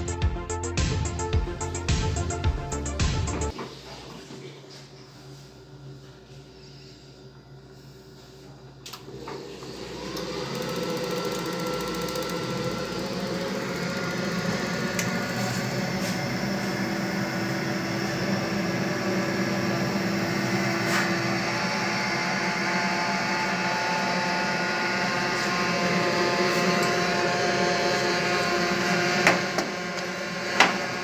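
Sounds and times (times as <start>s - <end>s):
gas boiler humming: 1.5s - 31.0s
boiler whine: 6.6s - 31.0s.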